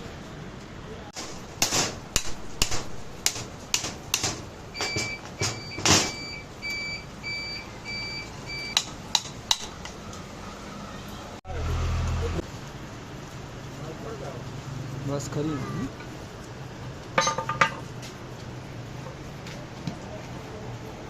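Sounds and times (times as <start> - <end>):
short electronic beeps: 4.8 - 8.8.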